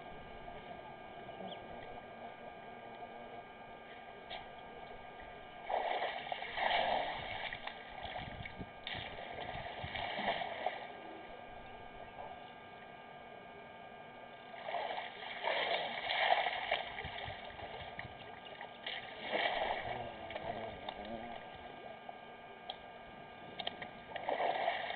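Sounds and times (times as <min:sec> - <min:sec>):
steady hum: 0:00.0 - 0:24.9
water splashing and gushing: 0:05.7 - 0:10.9, 0:14.6 - 0:17.9, 0:18.8 - 0:20.6, 0:24.1 - 0:24.9.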